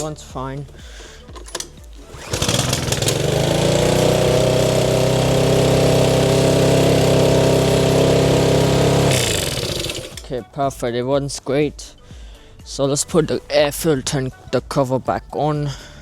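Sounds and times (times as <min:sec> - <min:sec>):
lawn mower engine starting and running: 0:01.5 - 0:10.4.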